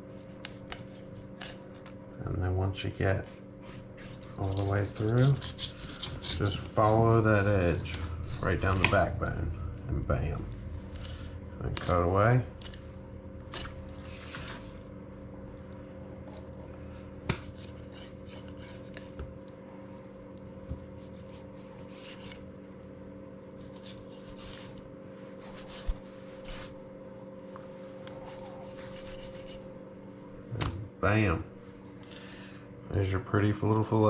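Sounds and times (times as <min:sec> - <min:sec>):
steady background hum: 0:00.0 - 0:34.0
knife scraping through fish: 0:03.2 - 0:09.2, 0:13.5 - 0:14.8, 0:17.3 - 0:19.2, 0:20.9 - 0:22.5, 0:23.6 - 0:26.8, 0:27.9 - 0:29.7.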